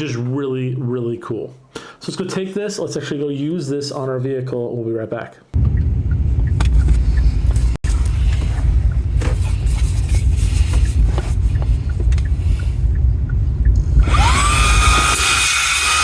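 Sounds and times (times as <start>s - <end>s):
low rumble: 5.6s - 15.4s
handheld vacuum motor whining: 14.0s - 16.0s.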